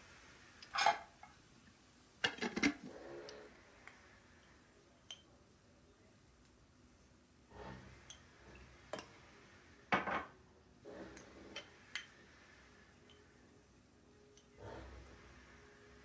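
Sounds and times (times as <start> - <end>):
dishes and utensils clinking: 0.6 - 1.4, 2.2 - 2.9
dishes clattering: 0.7 - 1.4, 2.2 - 2.9, 9.9 - 10.3.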